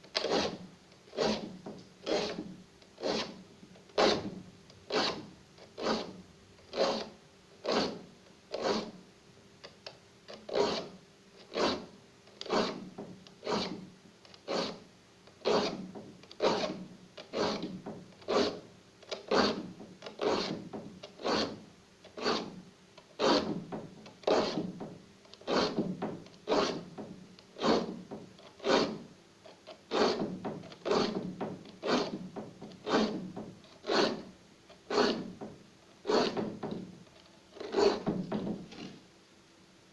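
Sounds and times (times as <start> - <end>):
file rasping on saw teeth: 0.2 - 2.4, 3.0 - 3.4, 4.0 - 4.3, 4.9 - 8.9, 10.5 - 12.8, 13.4 - 13.8, 14.5 - 14.8, 15.4 - 15.8, 16.4 - 21.6, 22.2 - 22.6, 23.2 - 23.6, 24.2 - 24.7, 25.4 - 25.8, 26.5 - 26.9, 27.6 - 29.0, 29.8 - 32.2, 32.8 - 34.3, 34.9 - 35.3, 36.0 - 36.5, 37.6 - 38.1.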